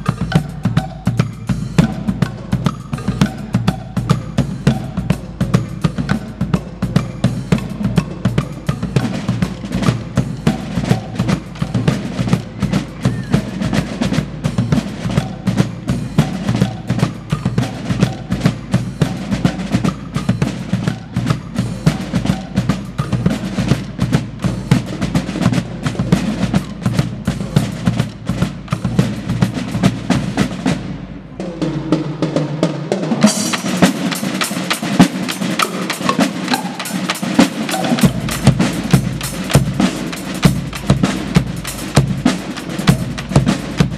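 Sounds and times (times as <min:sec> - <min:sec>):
drum group playing: 0:00.0 - 0:43.9
snare rolls: 0:31.6 - 0:43.9.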